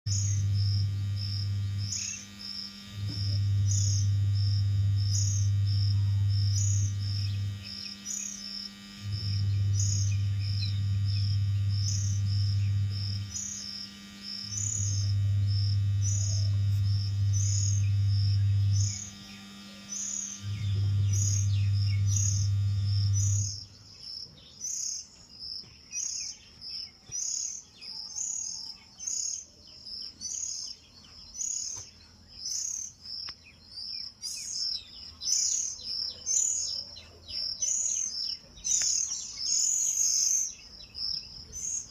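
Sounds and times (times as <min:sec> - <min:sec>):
loud low hum: 0:00.1 - 0:23.7
birds chirping: 0:00.1 - 0:41.9.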